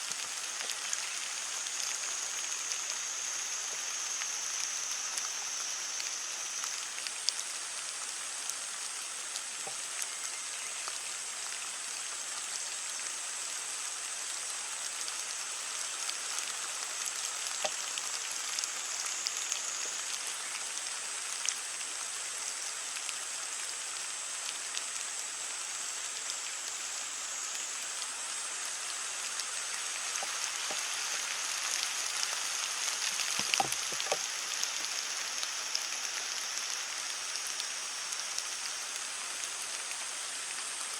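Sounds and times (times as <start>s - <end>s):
heavy rain on leaves: 0.0s - 40.9s
single raindrops ticking: 29.3s - 40.9s.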